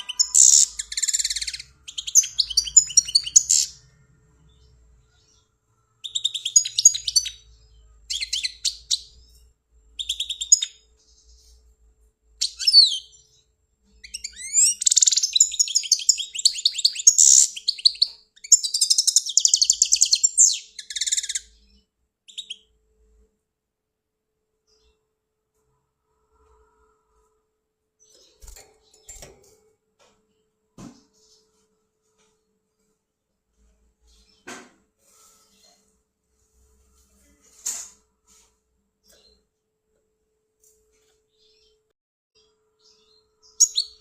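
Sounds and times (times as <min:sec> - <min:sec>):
goldfinch singing: 0:00.0 - 0:03.9, 0:06.0 - 0:09.2, 0:14.0 - 0:21.6.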